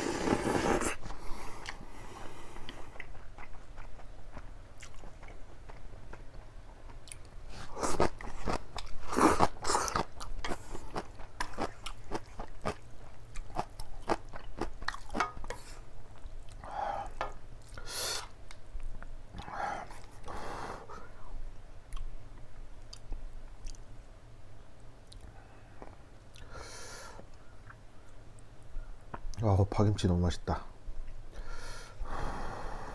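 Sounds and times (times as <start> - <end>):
person chewing and crunching: 0.0 - 16.6.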